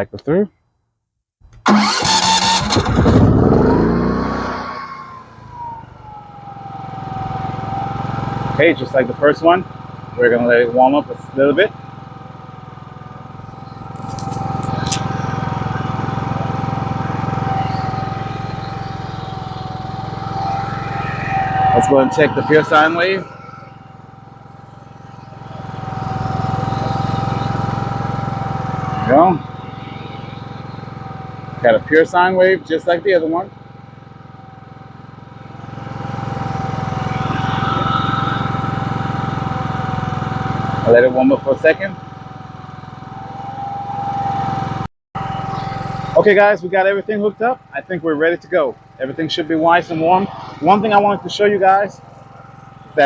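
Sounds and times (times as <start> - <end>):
generator engine running: 1.6 - 53.0
thin steady whine: 13.0 - 33.5, 34.3 - 42.0, 42.8 - 44.6, 45.2 - 53.0.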